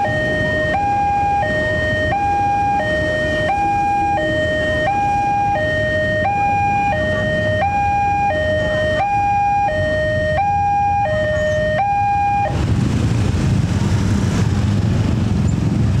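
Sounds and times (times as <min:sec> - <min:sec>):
level-crossing two-tone alarm: 0:00.0 - 0:12.5.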